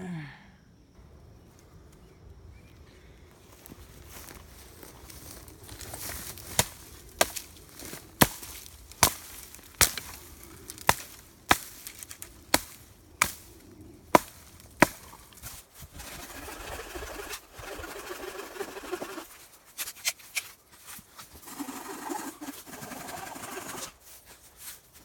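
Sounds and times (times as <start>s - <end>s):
wood being chopped: 6.4s - 13.5s, 14.1s - 15.6s.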